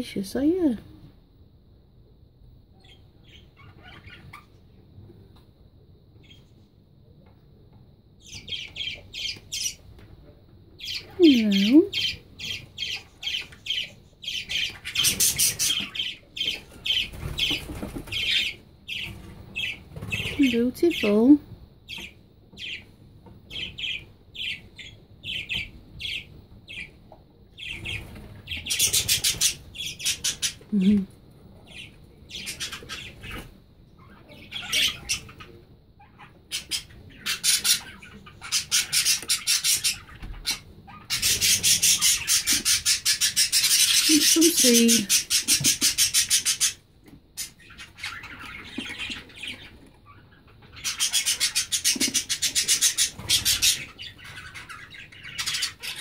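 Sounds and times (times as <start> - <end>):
budgerigars chirping: 2.8 - 4.6, 8.2 - 9.8, 10.8 - 21.3, 21.9 - 22.9, 23.5 - 27.0, 27.6 - 30.7, 31.7 - 46.8, 47.4 - 56.0.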